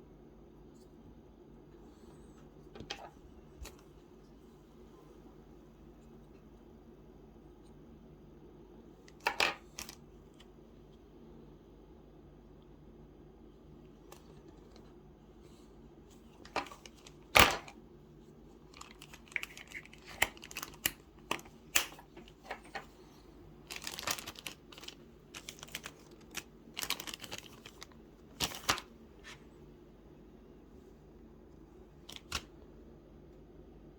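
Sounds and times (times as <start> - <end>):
packaging crinkling: 16.4 - 17.8, 18.6 - 22.9, 23.6 - 28.9.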